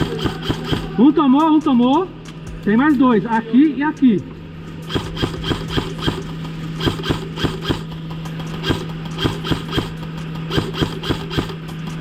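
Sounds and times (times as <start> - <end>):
airsoft rifle shots: 0.0 - 1.2, 4.9 - 11.7
low mechanical hum: 0.0 - 12.0.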